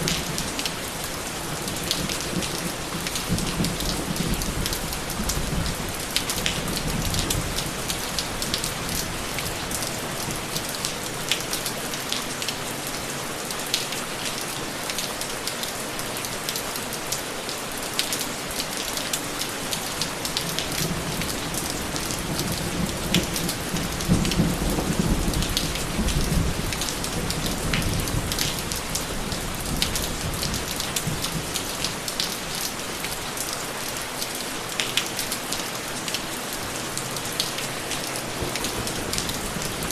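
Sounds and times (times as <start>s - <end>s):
rain falling: 0.0s - 39.9s
low thunder rumbles: 20.8s - 31.6s, 38.3s - 39.9s.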